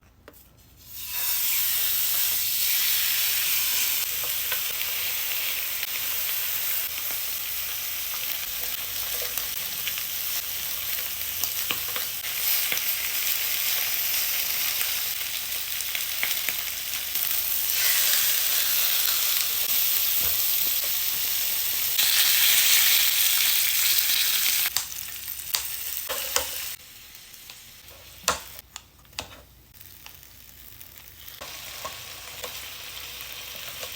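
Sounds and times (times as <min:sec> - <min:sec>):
food sizzling on a grill: 0:00.8 - 0:28.6, 0:29.7 - 0:33.9.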